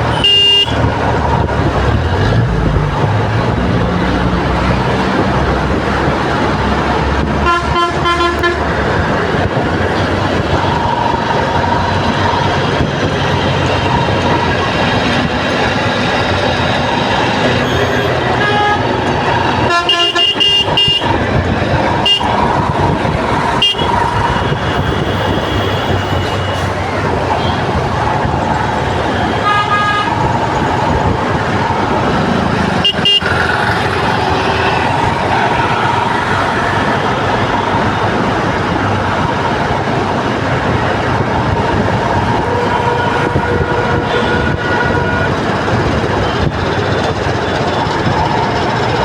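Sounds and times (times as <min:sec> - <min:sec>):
vehicle horns honking: 0:00.0 - 0:00.9, 0:07.4 - 0:08.8, 0:17.6 - 0:21.3, 0:22.0 - 0:27.8, 0:29.1 - 0:31.2, 0:32.4 - 0:36.2, 0:42.2 - 0:46.5
traffic engine din: 0:00.0 - 0:49.0.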